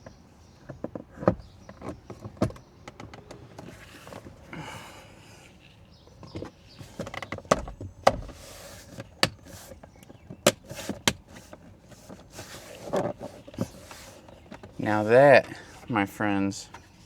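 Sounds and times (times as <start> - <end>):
plastic rubbing and rustling: 5.6 - 15.4.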